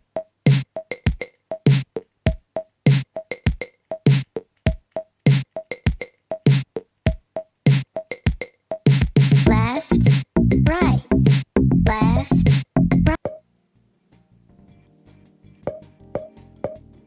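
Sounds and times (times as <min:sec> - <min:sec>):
electronic music with drum-machine beat: 0:00.5 - 0:13.4
low kick drum: 0:08.3 - 0:13.2.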